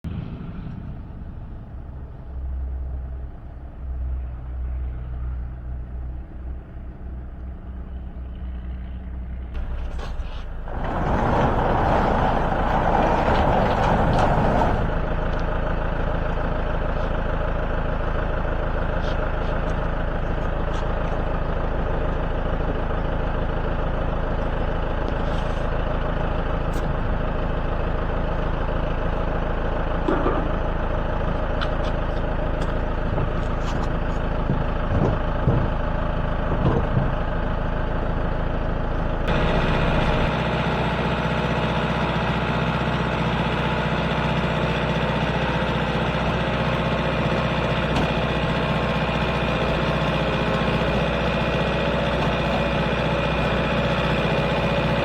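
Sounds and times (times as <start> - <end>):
large engine running and revving: 0.0 - 55.0.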